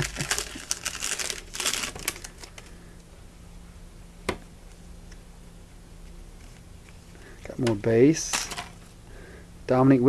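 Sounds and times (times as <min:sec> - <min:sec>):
wrapper crinkling: 0:00.0 - 0:02.7.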